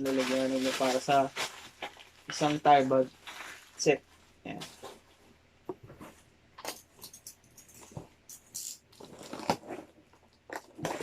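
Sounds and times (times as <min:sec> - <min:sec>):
cardboard packaging rustling: 0:00.0 - 0:05.2, 0:08.9 - 0:11.0
crinkling rustle: 0:00.0 - 0:06.2, 0:08.8 - 0:11.0.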